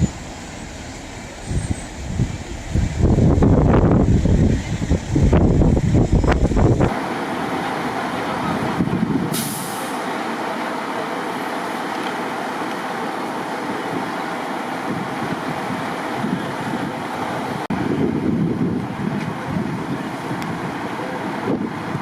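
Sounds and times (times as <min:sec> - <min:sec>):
heavy truck idling: 0:00.0 - 0:22.0
air hiss: 0:09.3 - 0:10.1.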